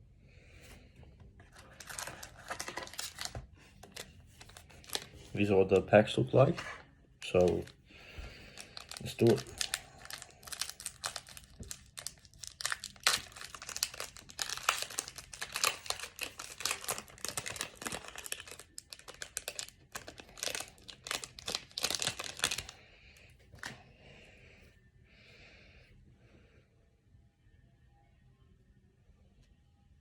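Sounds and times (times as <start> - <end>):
foil wrapper crinkling and tearing: 1.5 - 5.8, 7.2 - 22.8.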